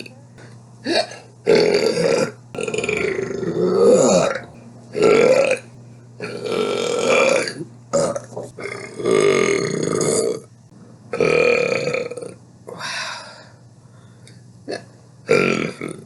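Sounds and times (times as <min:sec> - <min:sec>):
woman burping: 0:00.8 - 0:05.6.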